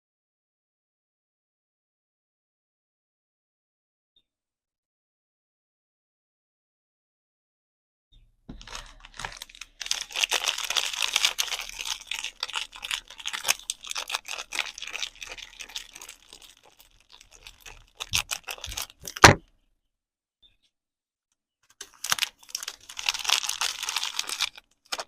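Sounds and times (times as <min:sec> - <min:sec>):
packaging crinkling and tearing: 0:08.5 - 0:19.4, 0:21.7 - 0:25.0.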